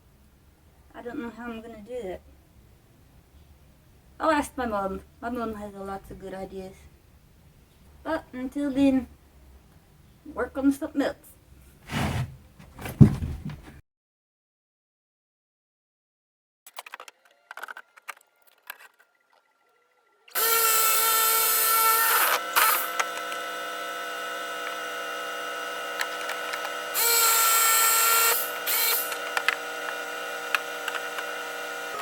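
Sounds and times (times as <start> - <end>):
electric power tool running: 20.3 - 32.0.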